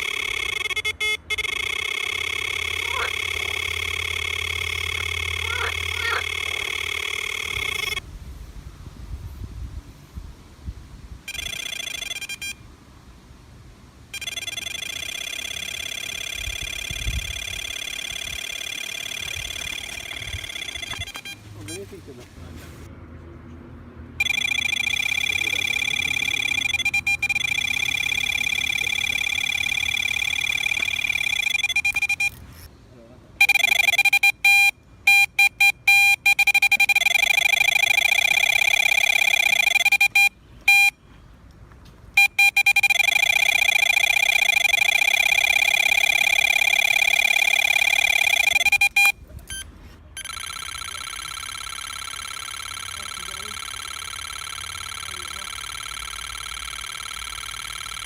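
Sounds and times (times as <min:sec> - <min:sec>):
bite alarm high tone: 0:00.0 - 0:08.0, 0:24.2 - 0:32.3, 0:33.4 - 0:41.0, 0:42.2 - 0:58.0
quick electronic beeps: 0:00.0 - 0:08.0, 0:14.2 - 0:21.9, 0:24.2 - 0:32.7, 0:33.4 - 0:41.0, 0:42.2 - 0:58.0.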